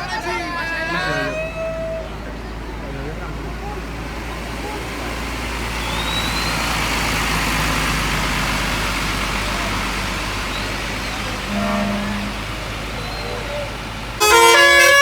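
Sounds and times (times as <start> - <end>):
bus horn blast: 0.0 - 1.7, 11.0 - 15.0
bus engine and tyre noise: 0.0 - 15.0.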